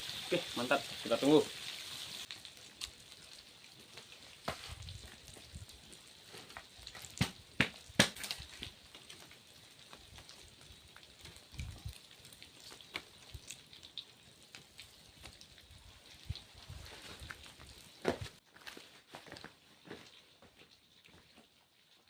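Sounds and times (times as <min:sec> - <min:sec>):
oil sizzling: 0:00.0 - 0:18.2
crackling pops: 0:06.5 - 0:10.2, 0:11.1 - 0:14.0.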